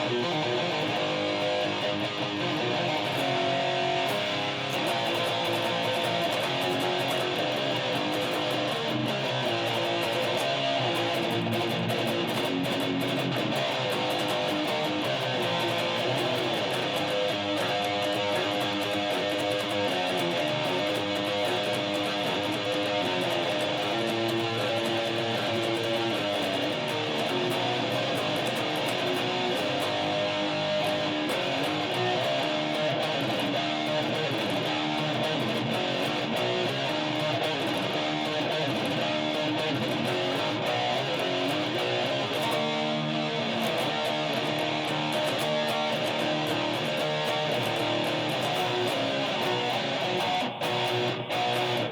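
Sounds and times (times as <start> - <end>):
guitar playing metal riffs: 0.0 - 51.9.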